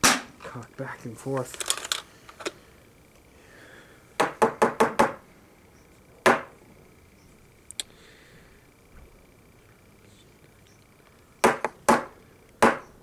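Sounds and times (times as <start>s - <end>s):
faint clicks: 7.6s - 8.0s.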